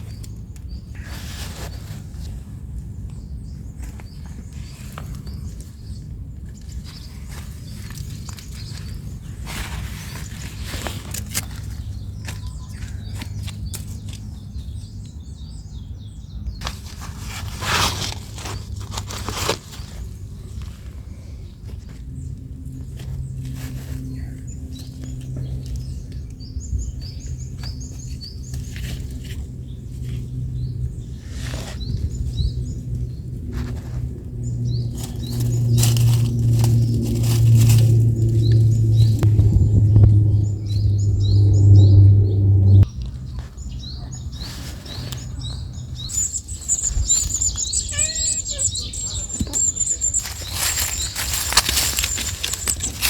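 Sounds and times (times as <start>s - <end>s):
small birds chirping: 0.0s - 53.0s
steady low hum: 20.1s - 43.9s
high thin bird trill: 46.1s - 53.0s.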